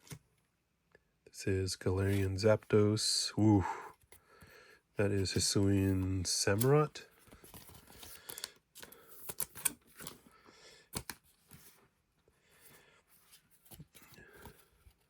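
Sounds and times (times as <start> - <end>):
cards clicking and rustling: 5.2 - 11.8.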